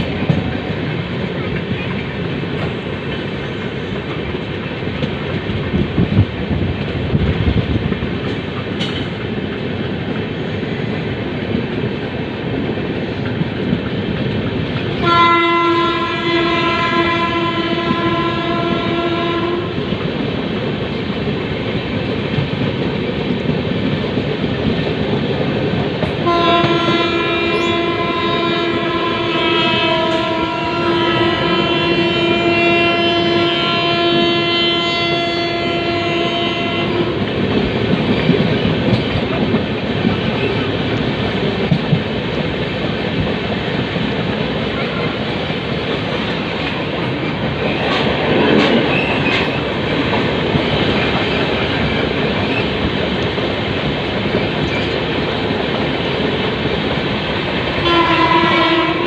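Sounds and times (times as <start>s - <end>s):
train wheels rumbling on track: 0.0s - 59.0s
train horn blast: 15.0s - 19.8s, 26.2s - 37.2s, 57.8s - 59.0s.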